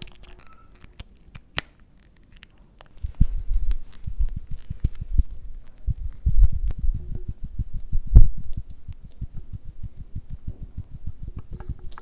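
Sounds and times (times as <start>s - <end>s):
dull low thuds: 3.1s - 12.0s.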